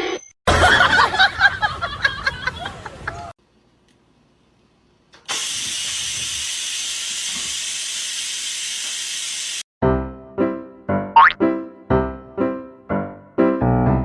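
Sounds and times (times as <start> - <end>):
music with piano notes: 9.8 - 14.0.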